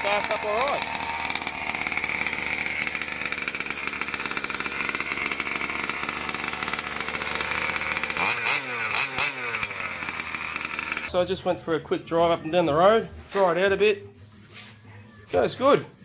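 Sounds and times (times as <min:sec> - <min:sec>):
small engine buzzing idle: 0:00.0 - 0:11.2
small engine revving: 0:00.0 - 0:11.2.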